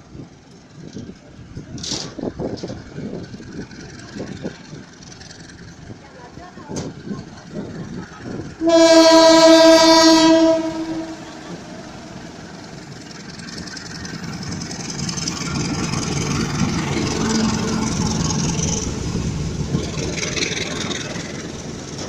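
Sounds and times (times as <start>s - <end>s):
train rumble: 0.0s - 22.0s
diesel locomotive horn: 8.6s - 12.4s.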